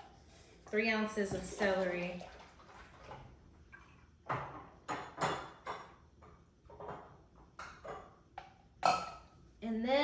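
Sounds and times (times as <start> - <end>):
kitchenware knocks and clinks: 4.3 - 9.3.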